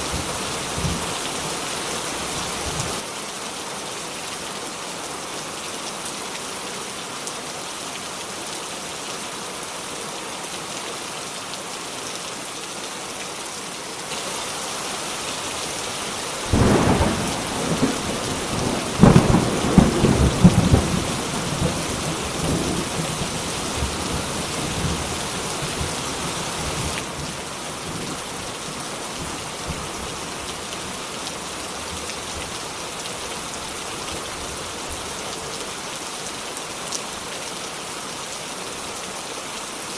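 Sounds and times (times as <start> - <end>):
steady rain falling: 0.0 - 39.9
thunder rolling and rumbling: 16.5 - 23.2.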